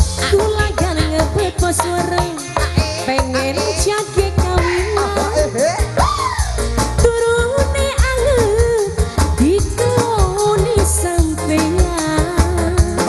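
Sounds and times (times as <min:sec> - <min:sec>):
drum beat: 0:00.0 - 0:08.8
bass line: 0:00.0 - 0:13.0
ornamented melody line: 0:00.0 - 0:13.0.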